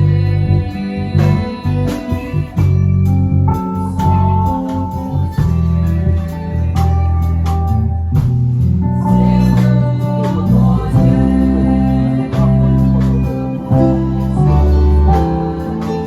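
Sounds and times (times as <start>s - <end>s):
band playing worship music: 0.0s - 16.0s
strong bass line: 0.0s - 16.0s
guitar strumming: 11.0s - 16.0s.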